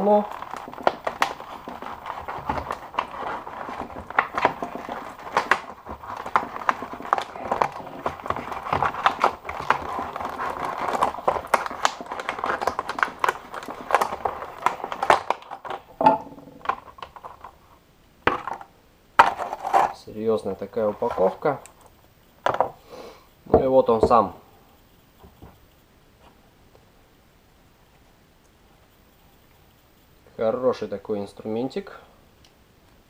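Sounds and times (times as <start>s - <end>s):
packaging rustling and crinkling: 0.0s - 22.8s.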